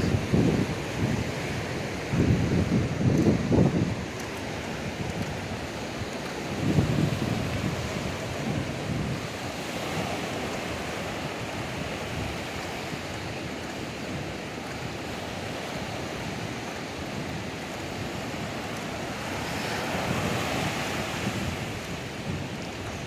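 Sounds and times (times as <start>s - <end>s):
ocean surf on beach: 0.0s - 23.0s
wind buffeting microphone: 0.0s - 23.0s.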